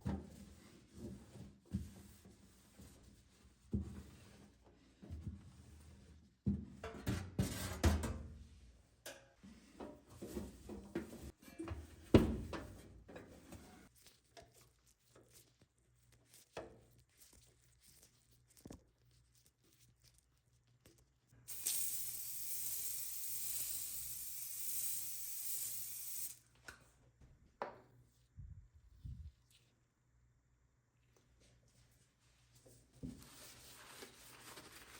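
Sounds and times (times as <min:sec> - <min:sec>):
cleaning spray hissing: 0:21.5 - 0:26.4.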